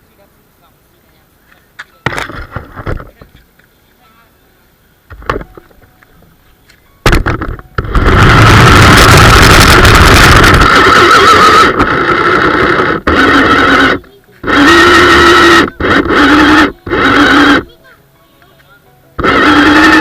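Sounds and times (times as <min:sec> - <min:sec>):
toy car electric motor whining: 0:07.1 - 0:17.8, 0:19.2 - 0:20.0.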